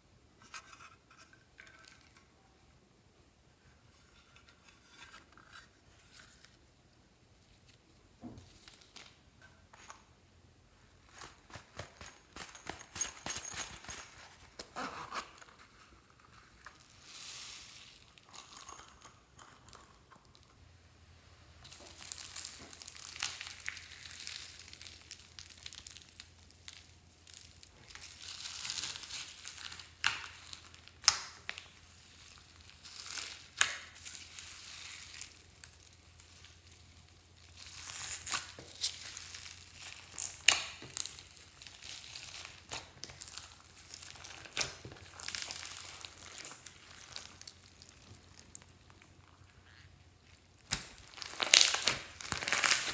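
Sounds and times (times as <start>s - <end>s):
slime wet crackling: 39.1s - 52.9s.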